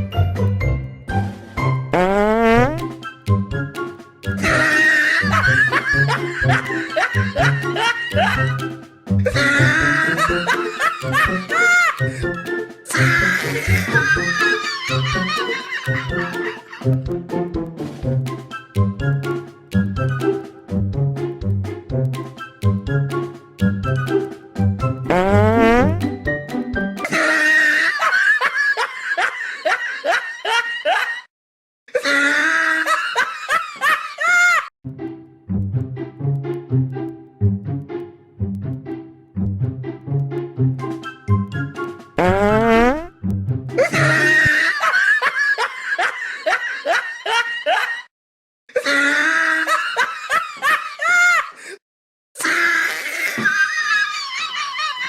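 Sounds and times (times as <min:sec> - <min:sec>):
person laughing loudly: 0:04.4 - 0:08.6, 0:09.2 - 0:12.3, 0:13.0 - 0:17.0, 0:27.0 - 0:31.3, 0:32.0 - 0:34.6, 0:43.8 - 0:48.1, 0:48.8 - 0:51.8.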